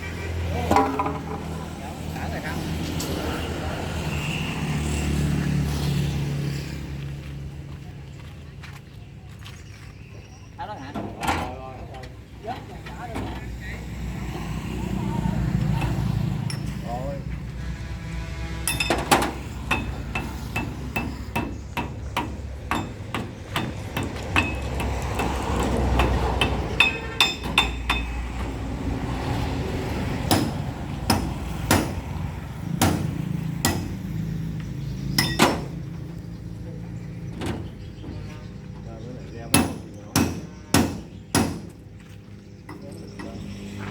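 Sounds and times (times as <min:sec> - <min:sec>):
hammer striking metal: 0:18.6 - 0:28.2, 0:30.3 - 0:32.0, 0:32.8 - 0:34.0, 0:35.2 - 0:35.8, 0:39.5 - 0:41.7.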